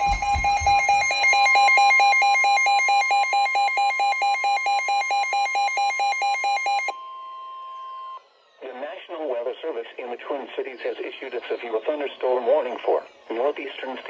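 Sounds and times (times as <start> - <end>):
rapidly pulsing beep: 0.0 - 6.9
steady high warning tone: 0.0 - 10.4.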